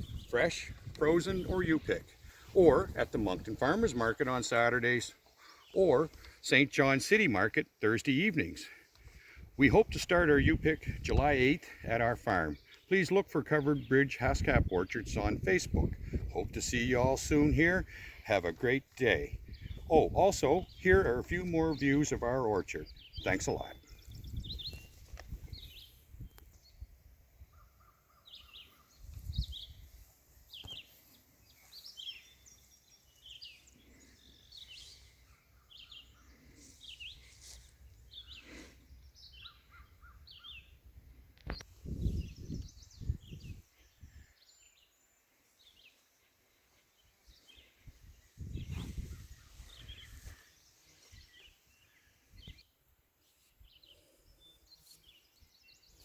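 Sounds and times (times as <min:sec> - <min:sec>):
wind buffeting microphone: 0:00.0 - 0:03.8, 0:09.4 - 0:11.5, 0:14.2 - 0:18.0, 0:19.2 - 0:21.8, 0:23.8 - 0:27.6, 0:28.9 - 0:30.0, 0:41.5 - 0:44.3, 0:47.8 - 0:50.4
songbirds chirping: 0:00.0 - 0:56.0.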